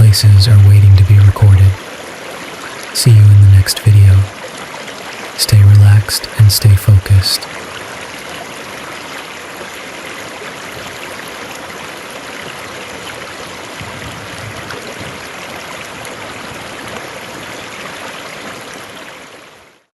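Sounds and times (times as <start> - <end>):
river water flowing: 0.1 - 6.4, 7.1 - 19.8.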